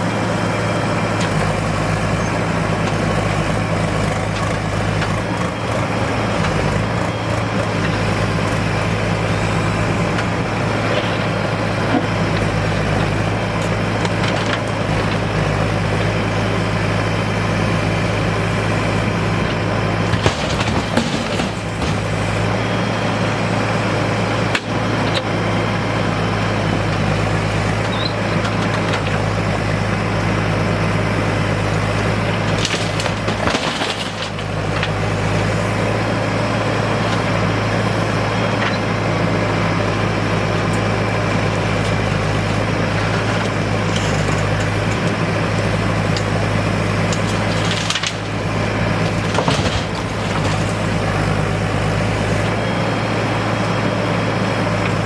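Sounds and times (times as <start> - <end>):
diesel engine running: 0.0 - 55.0
stones knocking and clattering: 47.1 - 48.3.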